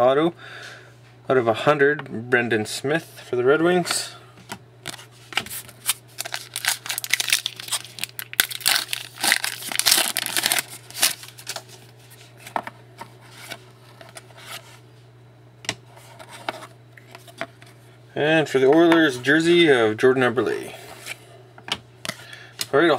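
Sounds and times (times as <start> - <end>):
plastic packaging crinkling: 4.9 - 12.5.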